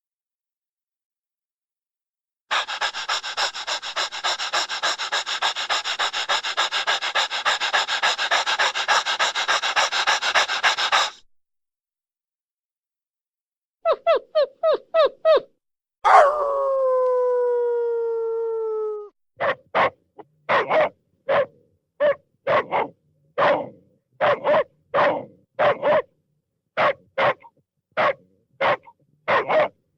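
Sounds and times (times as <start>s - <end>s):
dog yip: 13.8s - 16.4s, 19.4s - 26.1s, 26.8s - 29.8s
dog howling: 16.0s - 19.1s
dog barking: 19.4s - 26.1s, 26.8s - 29.8s.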